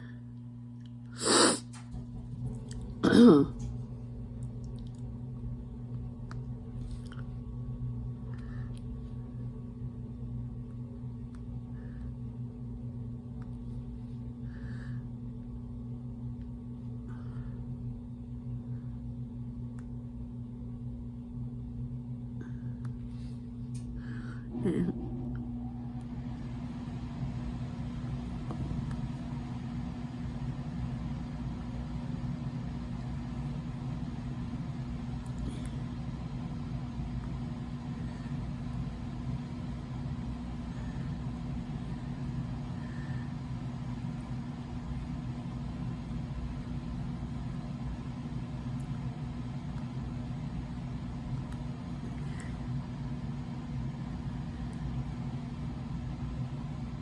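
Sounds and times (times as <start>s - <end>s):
low mechanical hum: 0.0s - 57.0s.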